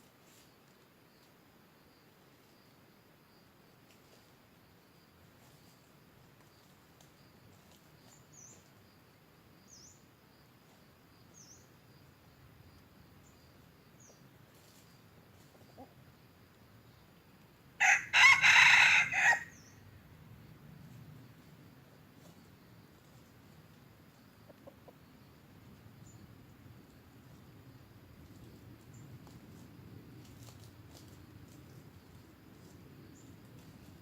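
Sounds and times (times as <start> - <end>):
rooster crowing: 17.8 - 19.8.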